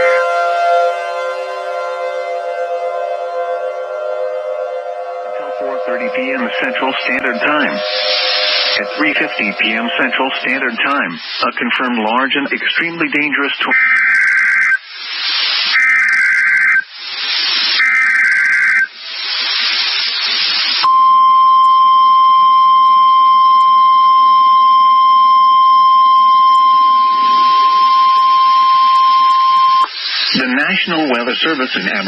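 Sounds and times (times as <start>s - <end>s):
steady alert tone: 4.0s - 11.2s, 26.7s - 28.8s
screeching digital data bursts: 5.4s - 11.6s, 13.7s - 20.9s, 25.0s - 30.8s
radio static hiss: 5.4s - 20.9s, 25.2s - 32.0s.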